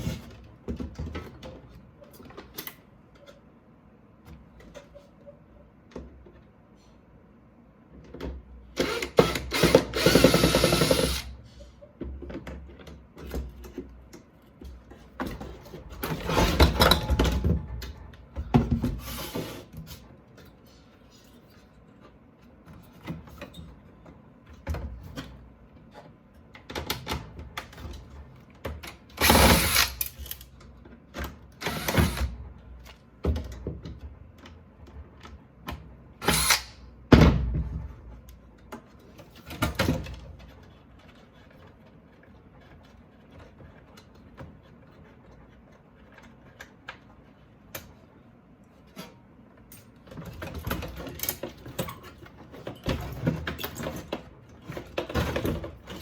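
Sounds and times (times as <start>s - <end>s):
cordless drill whirring: 8.8s - 11.3s, 29.2s - 30.0s, 31.6s - 32.3s, 36.2s - 36.7s
clicks and knocks of handling: 38.2s - 48.0s.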